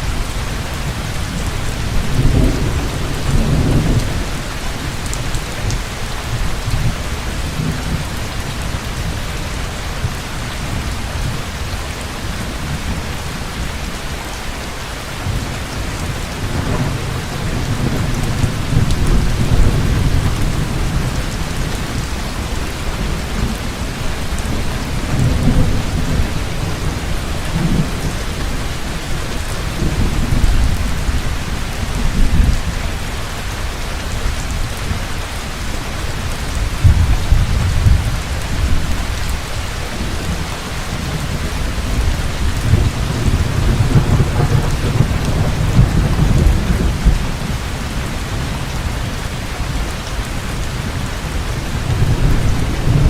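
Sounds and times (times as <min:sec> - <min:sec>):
rolling thunder: 0:00.0 - 0:05.8, 0:15.2 - 0:33.0, 0:36.2 - 0:49.9, 0:50.6 - 0:53.0
heavy rain: 0:00.0 - 0:53.0.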